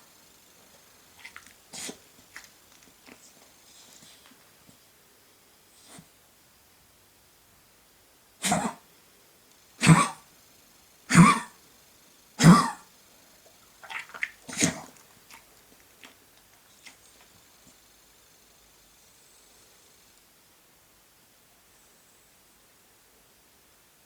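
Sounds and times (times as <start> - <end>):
dog coughing: 1.2 - 2.4, 8.4 - 8.8, 9.8 - 10.3, 11.1 - 11.6, 12.4 - 12.9, 13.8 - 15.4.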